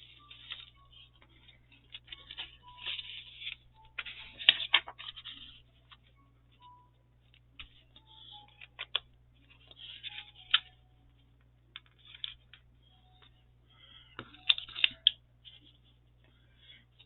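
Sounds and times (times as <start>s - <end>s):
paper rustling: 0.0s - 6.1s, 7.2s - 10.8s, 11.8s - 12.6s, 14.2s - 16.0s.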